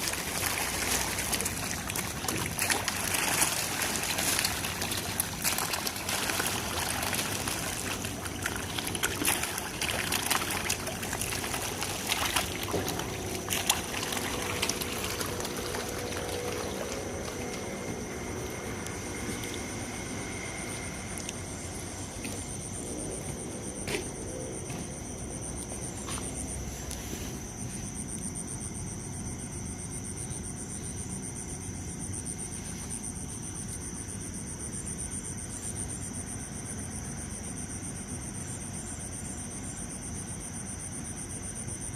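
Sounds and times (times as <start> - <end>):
water trickling and splashing: 0.0 - 22.3.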